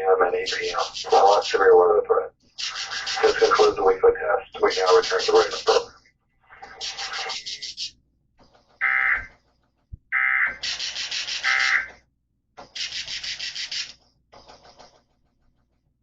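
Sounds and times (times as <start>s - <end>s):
harsh buzzing data bursts: 2.6s - 3.8s, 10.6s - 11.9s.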